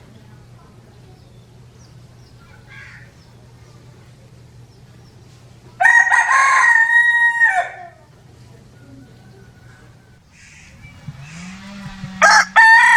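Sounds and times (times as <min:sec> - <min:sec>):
rooster crowing: 0:05.8 - 0:08.0, 0:08.8 - 0:12.9.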